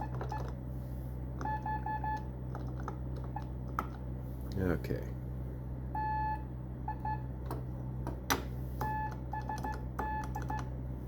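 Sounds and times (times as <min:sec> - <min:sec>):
morse code beeps: 0:01.4 - 0:02.3, 0:06.0 - 0:07.3, 0:08.8 - 0:10.7.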